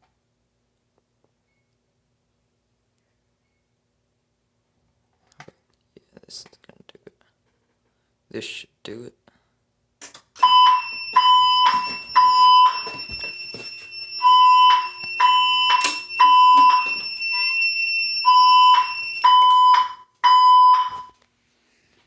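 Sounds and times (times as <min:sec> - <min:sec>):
fire alarm beeps: 0:10.4 - 0:21.2.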